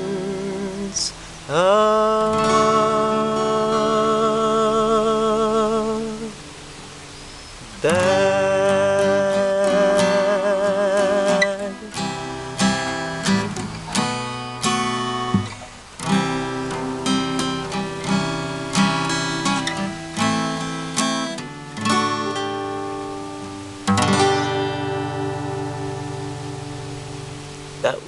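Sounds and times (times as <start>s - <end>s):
acoustic guitar chords: 0.0s - 28.0s.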